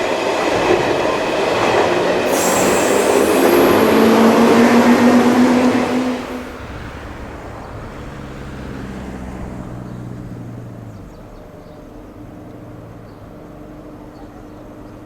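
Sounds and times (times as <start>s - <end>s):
train rumble: 0.0s - 14.8s.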